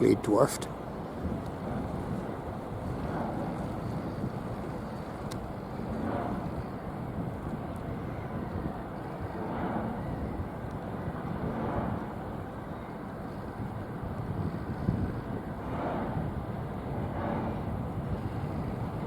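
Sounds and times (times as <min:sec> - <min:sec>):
rumble of distant vehicles: 0:00.0 - 0:19.0.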